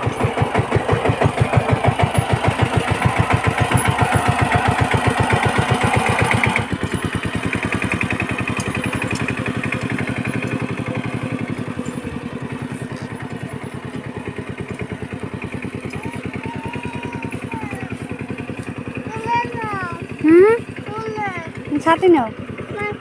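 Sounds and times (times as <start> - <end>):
small engine thumping: 0.0 - 23.0.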